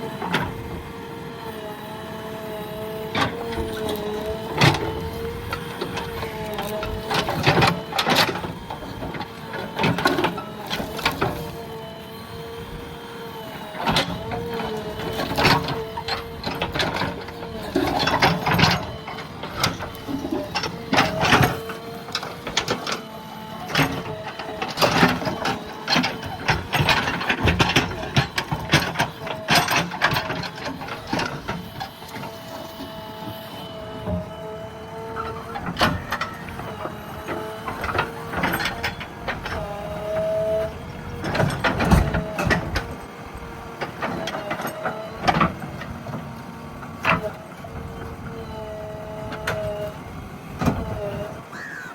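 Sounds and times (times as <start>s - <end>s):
diesel engine whine: 0.0s - 51.9s.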